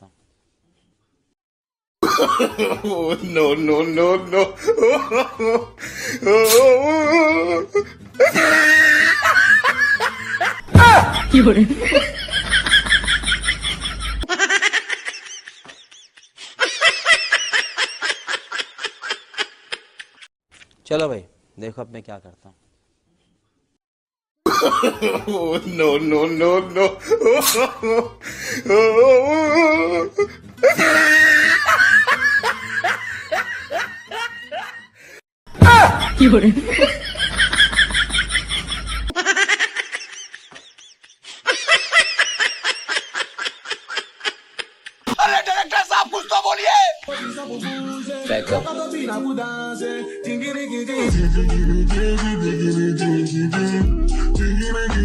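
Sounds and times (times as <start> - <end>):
high-pitched laughter: 6.3 - 20.3, 29.1 - 34.9, 35.6 - 45.1.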